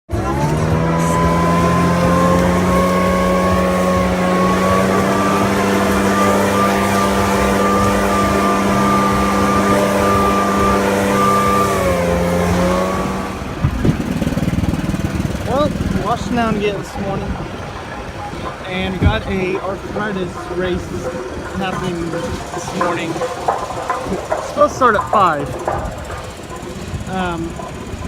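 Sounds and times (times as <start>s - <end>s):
small engine revving high: 0.1s - 16.7s.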